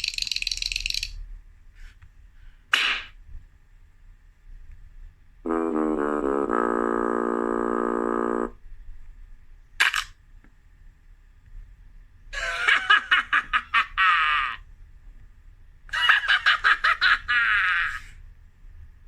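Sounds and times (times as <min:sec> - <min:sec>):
buzzy cartoon tone: 0:05.5 - 0:08.6.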